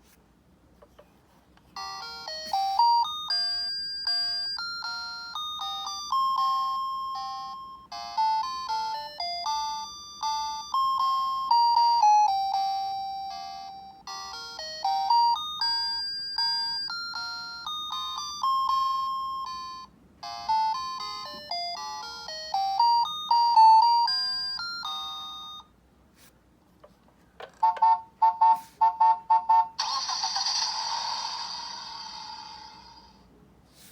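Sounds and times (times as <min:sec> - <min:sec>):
garbage truck electronic melody: 0:01.8 - 0:25.6.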